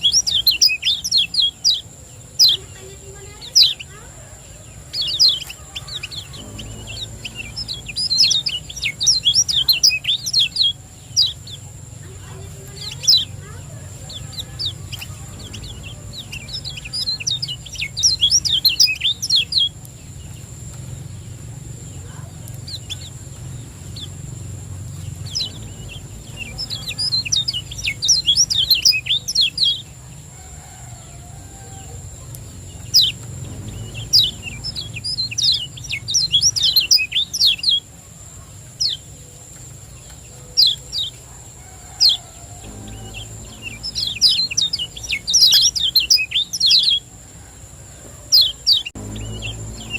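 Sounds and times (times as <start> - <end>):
bird chirping high notes: 0.0 - 20.3, 21.0 - 30.1, 32.6 - 37.9, 40.7 - 47.1, 48.4 - 49.9
faint high whine: 0.0 - 49.9
low hum: 4.5 - 30.3, 31.3 - 37.3, 42.1 - 47.3, 48.7 - 49.9.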